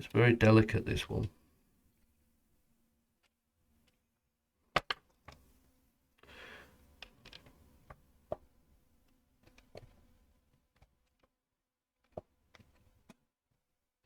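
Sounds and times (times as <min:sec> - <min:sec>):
plastic pieces clicking: 0:07.0 - 0:07.5.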